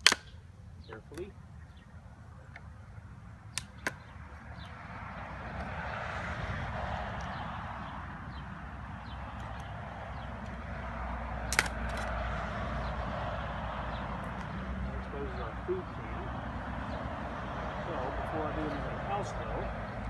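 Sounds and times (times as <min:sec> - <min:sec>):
wood cracking: 0:00.0 - 0:01.2, 0:03.5 - 0:04.7, 0:09.2 - 0:14.8.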